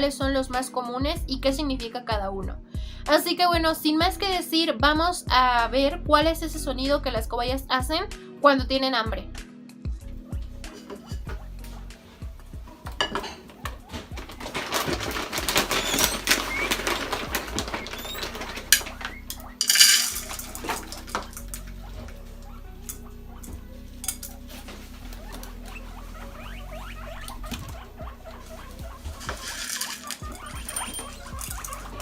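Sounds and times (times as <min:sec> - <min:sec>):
guinea pigs wheeking: 0:10.0 - 0:32.0
rustling: 0:10.7 - 0:32.0.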